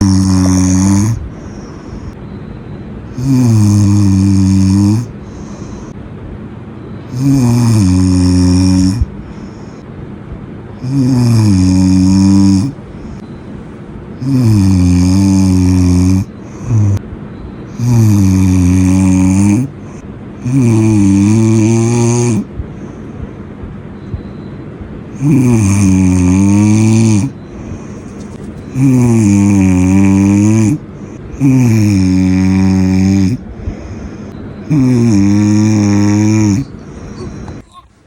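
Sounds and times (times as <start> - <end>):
person snoring loudly: 0.0 - 2.2, 3.1 - 5.9, 7.1 - 9.8, 10.8 - 12.8, 14.2 - 17.0, 17.7 - 22.5, 25.1 - 27.9, 28.7 - 37.6.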